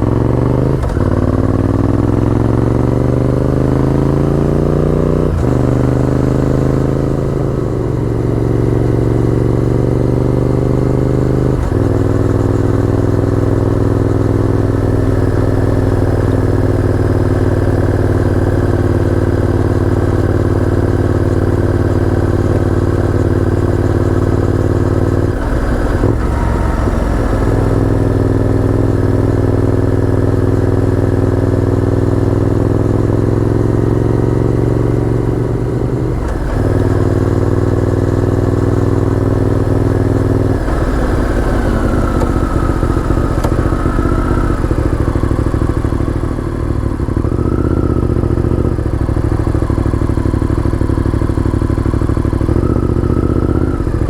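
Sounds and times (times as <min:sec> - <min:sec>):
motorcycle engine accelerating: 0:00.0 - 0:54.0.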